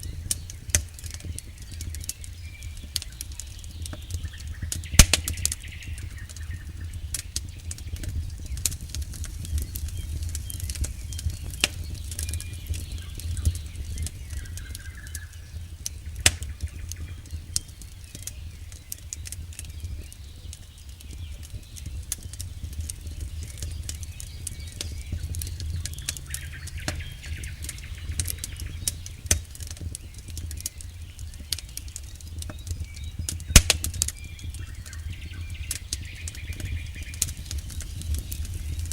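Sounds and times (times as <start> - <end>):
campfire crackling and popping: 0.0 - 38.9
low steady rumble: 21.9 - 38.9.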